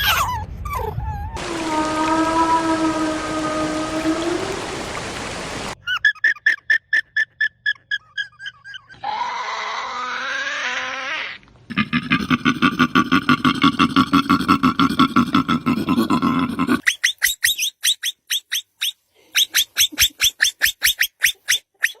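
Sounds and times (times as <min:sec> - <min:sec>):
fast train of animal call pulses: 0:01.4 - 0:07.1.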